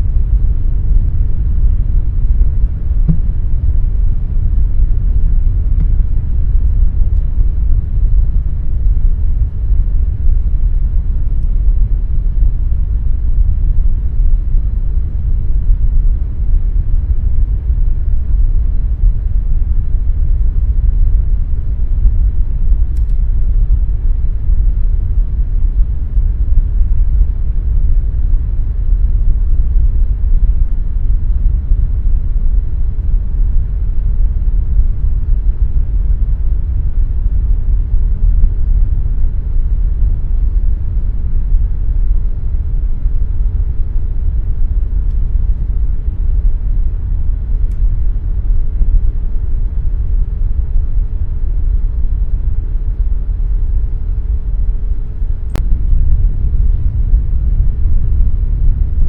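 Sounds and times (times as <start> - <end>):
faint steady hum: 0.0 - 59.0
air conditioner whoosh: 2.4 - 4.7.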